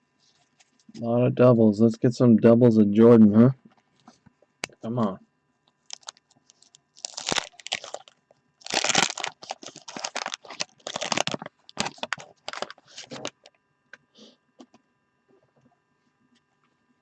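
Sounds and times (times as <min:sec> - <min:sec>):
wax paper pack tearing and crinkling: 0:05.9 - 0:13.5.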